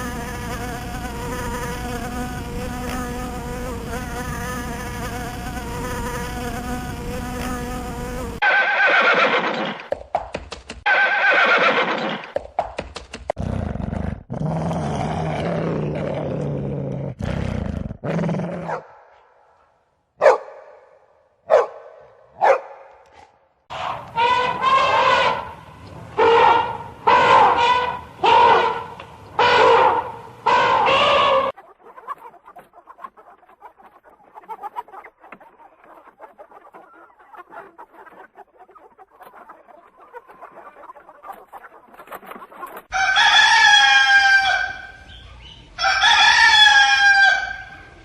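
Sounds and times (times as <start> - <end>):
flying insect buzzing: 0.0 - 8.4.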